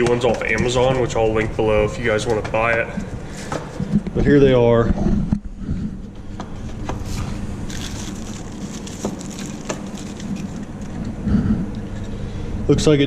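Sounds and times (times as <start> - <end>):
steady low hum: 0.0 - 13.0
packaging crinkling: 7.0 - 11.1.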